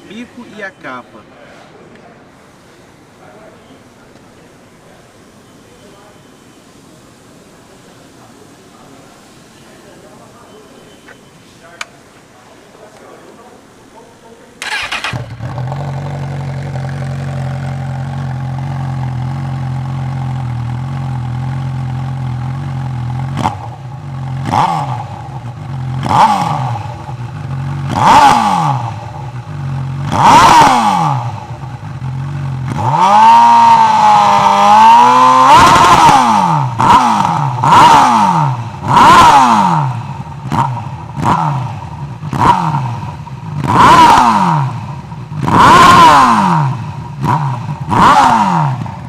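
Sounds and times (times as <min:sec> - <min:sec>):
motorcycle engine idling and revving: 0:14.6 - 0:49.0.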